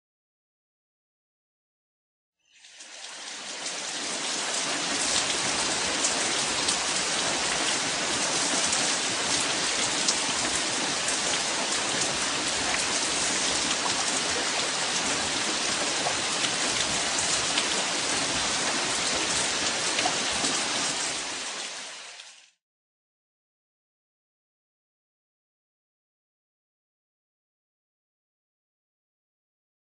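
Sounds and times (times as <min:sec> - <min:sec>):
steady rain falling: 0:02.6 - 0:22.6.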